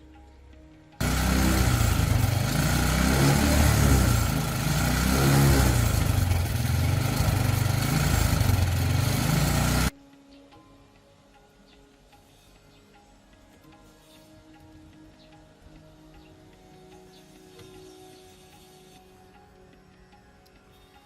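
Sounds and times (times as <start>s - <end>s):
motorcycle engine revving: 1.0s - 9.9s.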